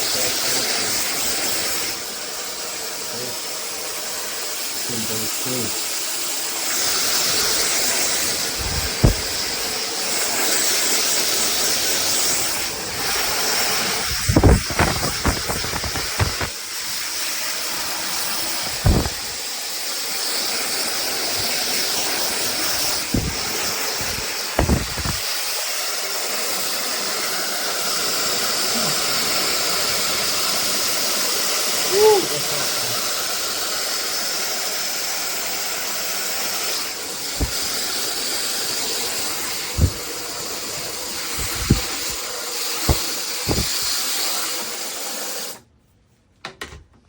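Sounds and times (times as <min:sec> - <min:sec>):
hair dryer blowing: 0:00.0 - 0:45.6
dull low thumps: 0:08.6 - 0:09.6, 0:23.0 - 0:25.2, 0:39.7 - 0:40.1, 0:41.4 - 0:42.2, 0:42.9 - 0:43.9.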